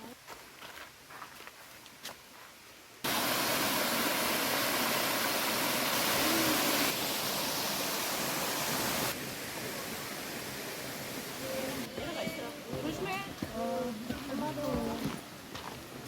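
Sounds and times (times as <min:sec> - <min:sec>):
water rushing over rocks: 0:03.0 - 0:13.0.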